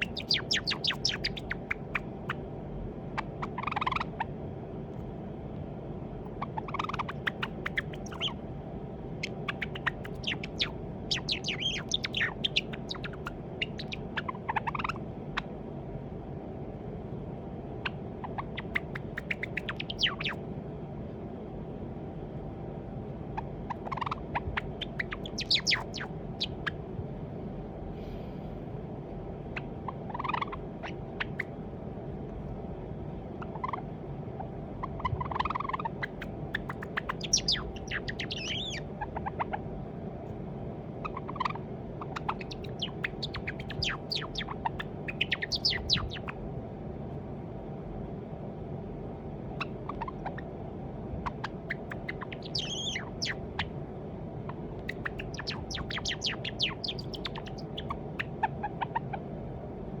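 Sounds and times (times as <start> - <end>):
sparrow clicking and chirping: 0.0 - 2.1, 6.7 - 8.3, 9.2 - 14.9, 18.5 - 20.4, 24.8 - 26.7, 35.3 - 38.9, 42.2 - 46.3, 51.7 - 53.4, 54.8 - 58.3
steady low hum: 0.0 - 60.0.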